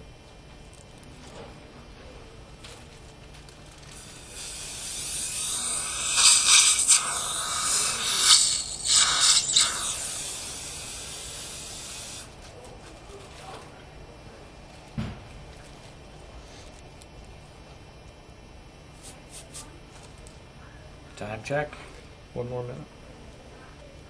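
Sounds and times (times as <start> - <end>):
hiss of rushing air: 4.0 - 12.3.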